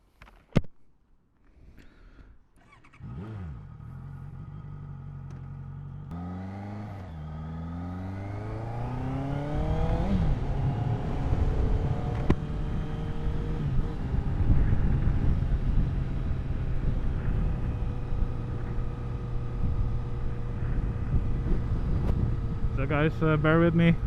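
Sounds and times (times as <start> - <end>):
motorcycle engine revving: 2.6 - 24.0
wind noise: 8.4 - 24.0.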